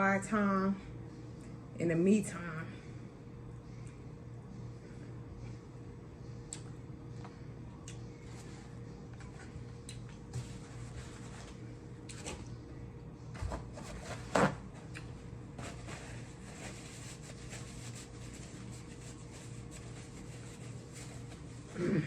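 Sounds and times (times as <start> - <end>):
low room hum: 0.0 - 22.0.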